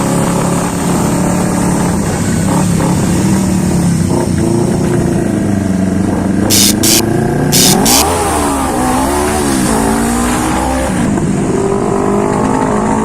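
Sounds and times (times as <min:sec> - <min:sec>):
motorcycle engine running: 0:01.5 - 0:08.2.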